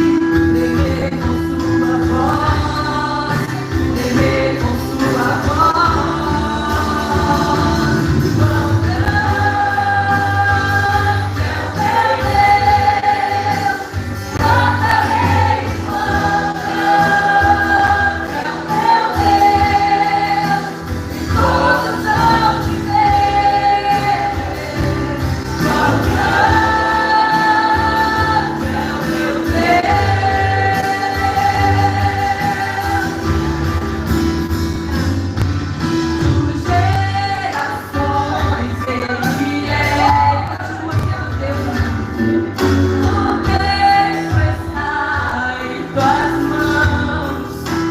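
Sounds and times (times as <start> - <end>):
singers holding long notes: 0.0 - 34.5, 36.1 - 47.9
gospel worship band playing: 0.0 - 47.9.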